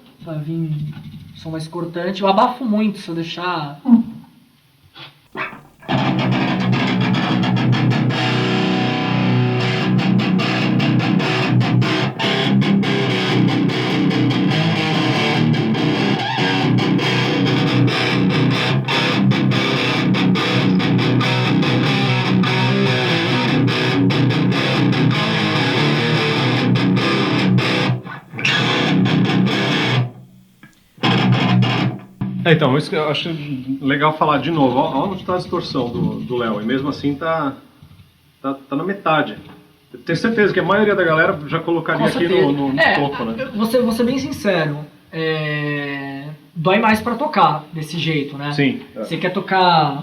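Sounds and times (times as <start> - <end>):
distorted electric guitar riffing: 5.4 - 32.4.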